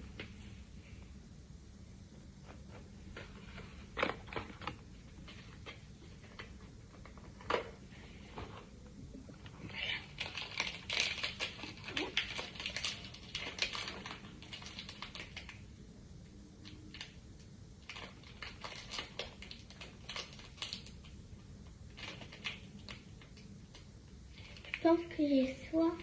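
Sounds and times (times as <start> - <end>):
packaging crinkling and clicking: 10.0 - 15.7, 16.6 - 21.2, 21.9 - 24.9.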